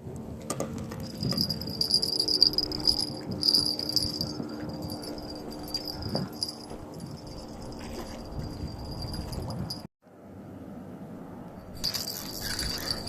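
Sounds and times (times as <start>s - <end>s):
low rumbling noise: 0.0s - 13.0s
high-pitched insect trill: 1.0s - 9.9s, 11.7s - 13.0s.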